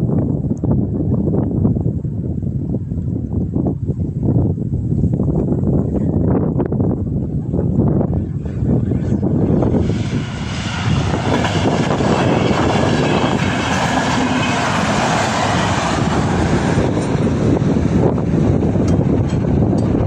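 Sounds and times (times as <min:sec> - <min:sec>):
train wheels rushing: 0:08.1 - 0:20.0.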